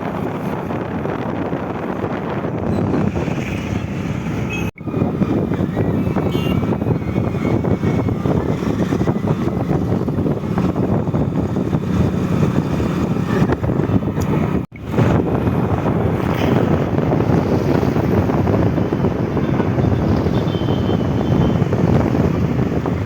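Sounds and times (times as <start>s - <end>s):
moving vehicle noise: 0.0s - 23.0s
wind on microphone: 0.0s - 23.0s.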